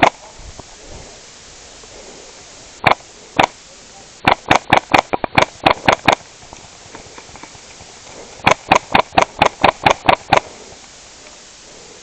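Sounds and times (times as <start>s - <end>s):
airsoft rifle shots: 0.0s - 0.3s, 2.8s - 3.6s, 4.2s - 6.6s, 8.4s - 10.7s.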